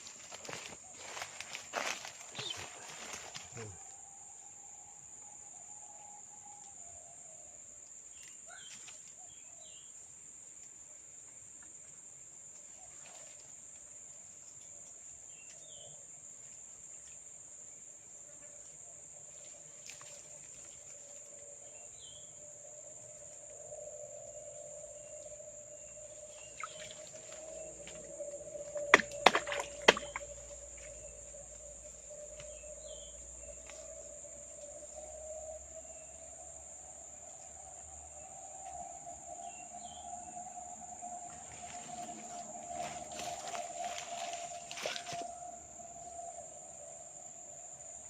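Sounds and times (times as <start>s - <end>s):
crickets and insects chirring: 0.0s - 48.0s
bird chirps: 2.3s - 2.8s, 25.0s - 27.8s
sharp knocks: 28.9s - 30.3s.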